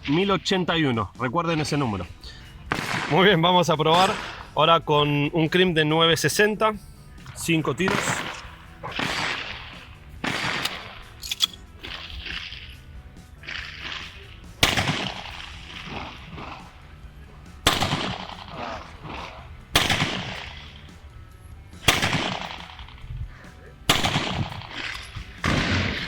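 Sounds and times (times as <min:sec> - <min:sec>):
gunshots with echo: 0:02.6 - 0:04.6, 0:07.8 - 0:11.2, 0:13.4 - 0:16.9, 0:17.5 - 0:21.0, 0:21.8 - 0:23.0, 0:23.9 - 0:26.0.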